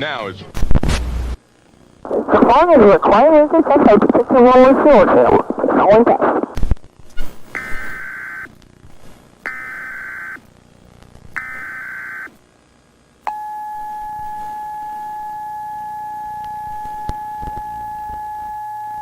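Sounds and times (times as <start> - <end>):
buzzy data bursts: 1.4 - 12.4, 16.2 - 19.0
steady single-pitch tone: 7.6 - 8.4, 13.2 - 19.0.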